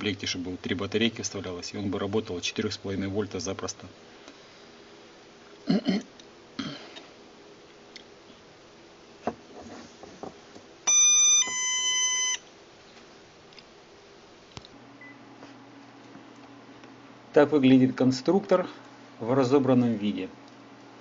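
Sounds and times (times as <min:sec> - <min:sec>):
electronic doorbell chime: 0:10.9 - 0:12.4.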